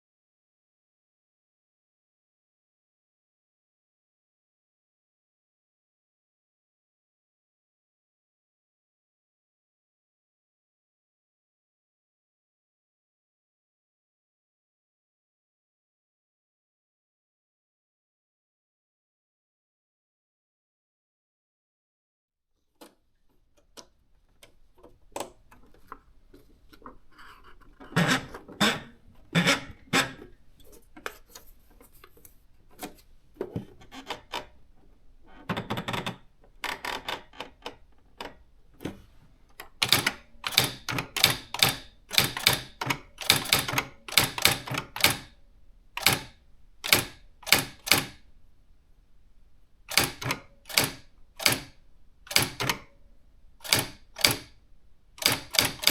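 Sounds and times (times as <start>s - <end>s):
electronic typewriter printing: 39.8s - 45.3s, 46.0s - 48.2s, 49.9s - 53.0s, 53.6s - 54.6s, 55.2s - 55.9s.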